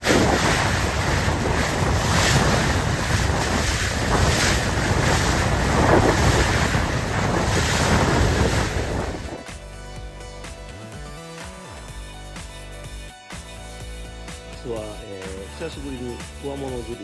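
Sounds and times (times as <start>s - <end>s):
wind buffeting microphone: 0.0s - 9.4s
sea waves washing: 0.0s - 9.5s.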